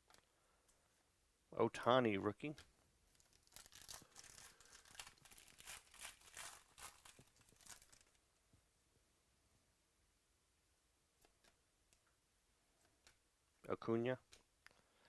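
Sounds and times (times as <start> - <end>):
wrapper rustling: 3.1 - 8.2.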